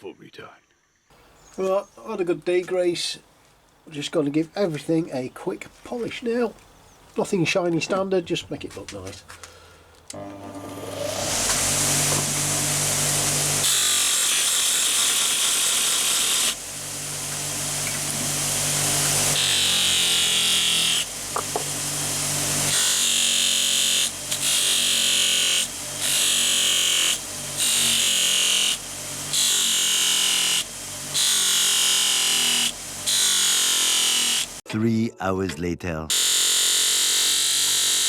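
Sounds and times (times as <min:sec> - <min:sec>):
power tool polishing metal: 0:10.1 - 0:34.6, 0:36.1 - 0:38.0.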